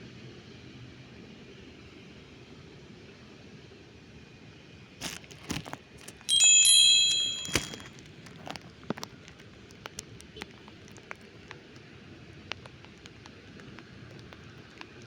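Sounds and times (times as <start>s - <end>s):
small bell ringing: 6.3s - 8.0s.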